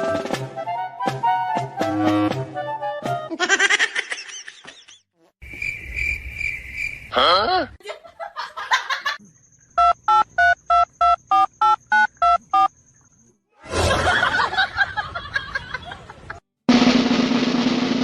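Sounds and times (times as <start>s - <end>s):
telephone keypad dialing beeps: 9.8s - 12.7s.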